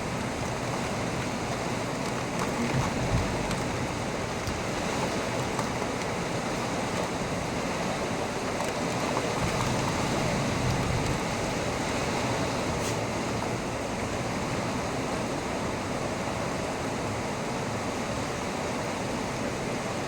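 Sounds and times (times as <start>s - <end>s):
raindrop ticks: 0.0s - 11.8s
heavy rain pouring: 0.0s - 20.0s.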